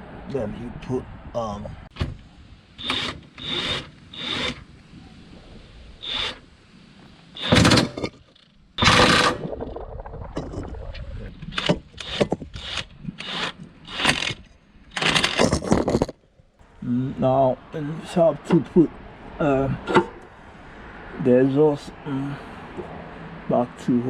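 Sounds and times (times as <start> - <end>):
hand tools scraping and knocking metal: 11.6 - 16.2, 19.8 - 20.3.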